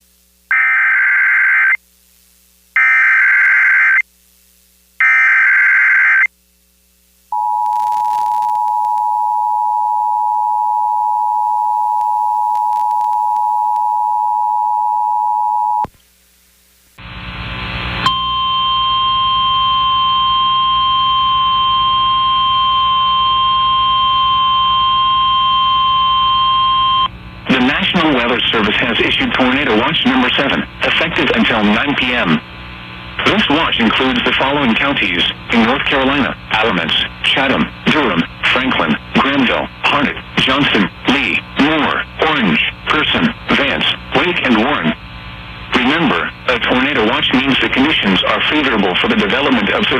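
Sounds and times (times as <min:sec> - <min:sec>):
radio hiss: 0:15.9 - 0:18.0, 0:26.5 - 0:49.9
data tone bursts: 0:18.1 - 0:27.1
steady warning alarm tone: 0:18.1 - 0:27.1.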